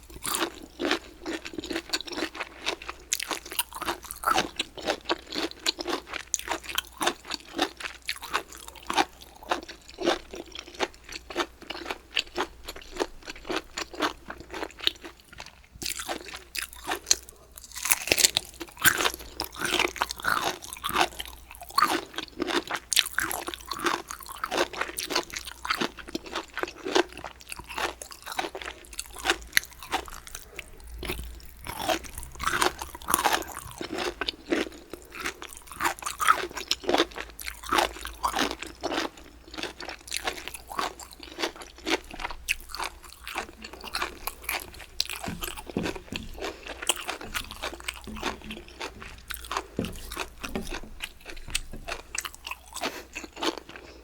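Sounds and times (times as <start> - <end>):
person chewing crunchy food: 0.0 - 54.0.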